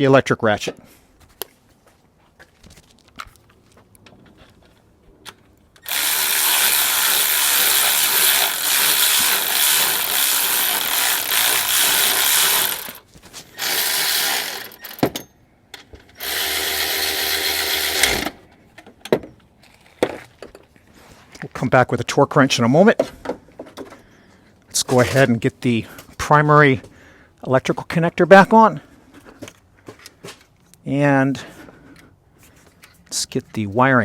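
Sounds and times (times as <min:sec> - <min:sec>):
electric ratchet whirring: 0:05.8 - 0:15.1, 0:16.1 - 0:18.5.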